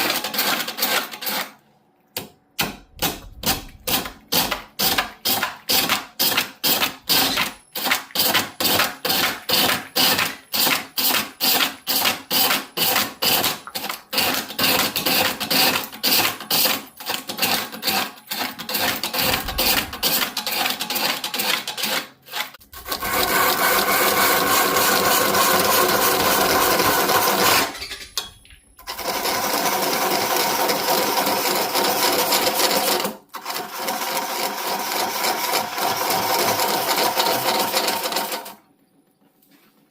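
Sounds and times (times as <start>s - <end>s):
power tool running: 19.1s - 20.3s.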